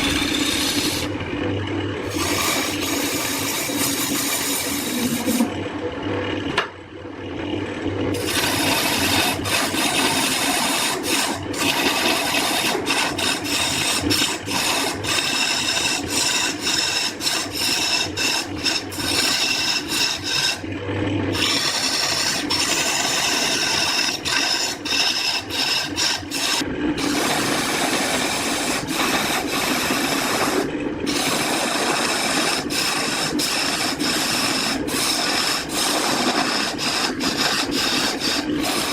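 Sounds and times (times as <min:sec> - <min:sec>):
tool scraping wood: 0:00.0 - 0:01.2, 0:02.0 - 0:05.6, 0:08.2 - 0:20.6, 0:21.3 - 0:38.9
low hum: 0:00.0 - 0:03.6.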